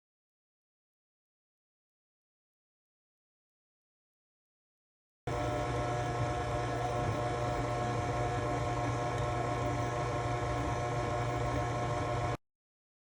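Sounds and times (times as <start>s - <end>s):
machine hum with low drone: 5.3s - 12.4s.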